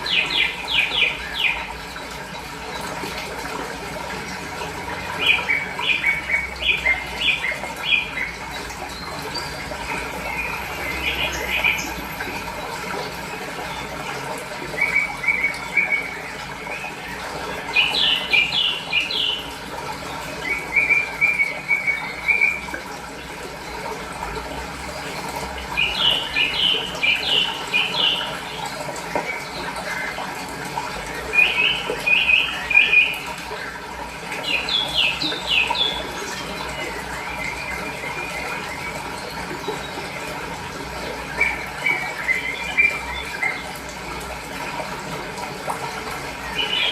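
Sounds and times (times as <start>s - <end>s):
flowing water rushing: 0.0s - 46.9s
small birds chirping: 14.6s - 22.7s, 24.8s - 30.2s, 31.2s - 40.4s, 46.5s - 46.9s.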